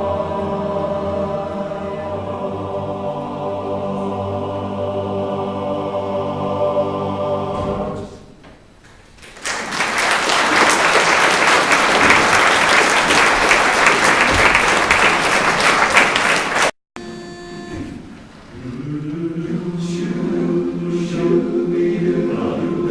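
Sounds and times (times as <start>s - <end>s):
barbershop chorus holding a chord: 0.0s - 8.2s, 18.5s - 22.9s
audience applause: 9.2s - 16.8s.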